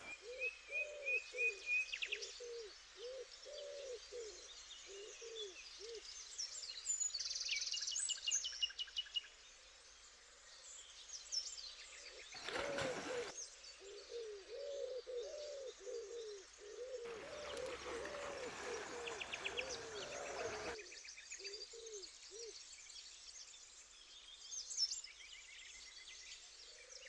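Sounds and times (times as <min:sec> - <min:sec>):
birds chirping and trilling: 0:12.0 - 0:22.5
bird hooting low notes: 0:14.1 - 0:20.8
river water rushing: 0:17.1 - 0:20.8.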